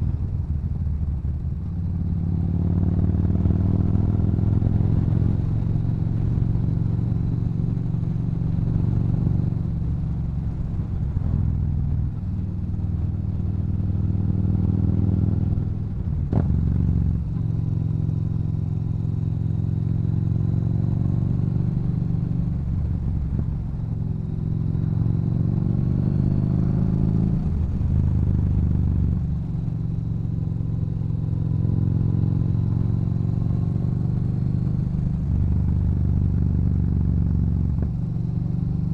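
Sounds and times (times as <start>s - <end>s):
motorcycle engine revving: 12.0s - 38.9s.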